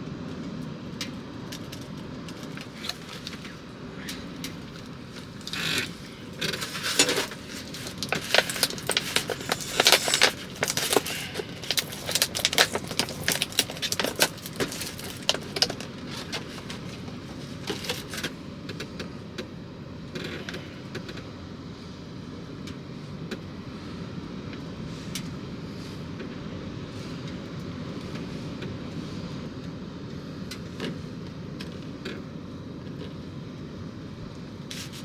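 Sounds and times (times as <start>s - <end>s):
steady background hiss: 0.0s - 35.0s
small hard objects clattering: 4.7s - 18.3s.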